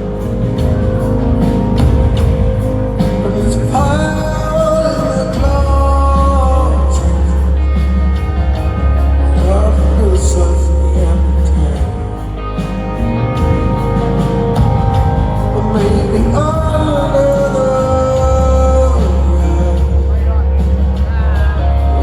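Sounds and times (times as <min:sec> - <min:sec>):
drums: 0:00.0 - 0:22.0
electric guitar: 0:00.0 - 0:22.0
heavy low bass: 0:00.0 - 0:22.0
live rock band playing: 0:00.0 - 0:22.0
man singing: 0:02.9 - 0:13.6, 0:14.6 - 0:22.0.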